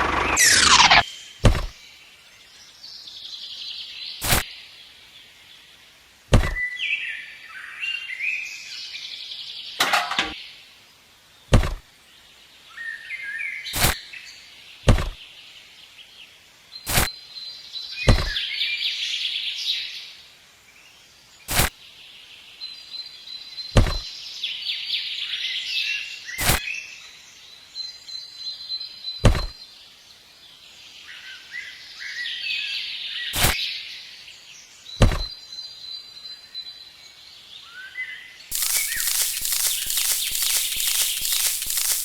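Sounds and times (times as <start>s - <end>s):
birds chirping: 38.5s - 42.0s
sharp clicks: 38.5s - 42.0s.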